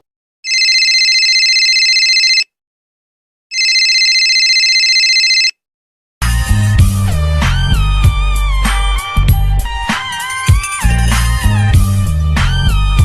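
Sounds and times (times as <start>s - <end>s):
telephone ringing: 0.4s - 2.5s, 3.5s - 5.6s
music: 6.2s - 13.0s.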